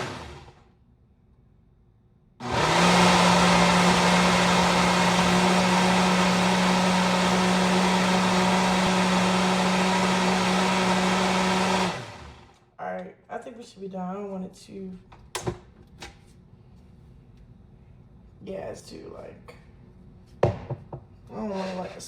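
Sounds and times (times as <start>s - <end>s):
blender grinding: 0.0s - 0.6s, 2.4s - 12.6s.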